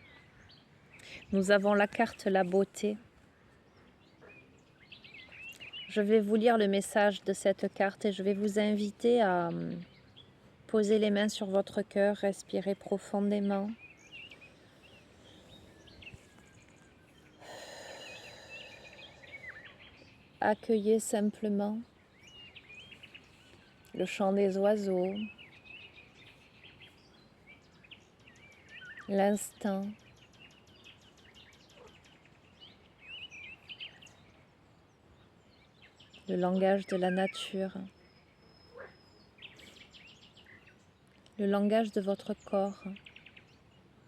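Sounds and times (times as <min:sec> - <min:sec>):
faint birdsong chirping: 0:00.0 - 0:44.0
quiet outdoor ambience: 0:00.0 - 0:44.0
slow deep breath: 0:14.3 - 0:16.4, 0:17.3 - 0:20.0.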